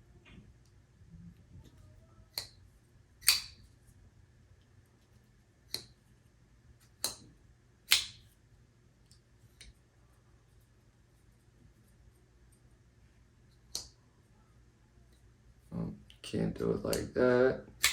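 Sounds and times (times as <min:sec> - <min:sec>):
folding knife blade clicking: 0:03.2 - 0:03.6.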